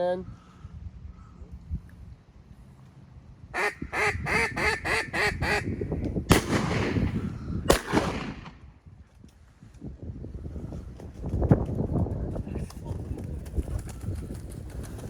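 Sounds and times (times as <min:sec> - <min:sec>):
duck call quacks: 0:03.6 - 0:05.7
shotgun shots echoing: 0:06.3 - 0:08.7.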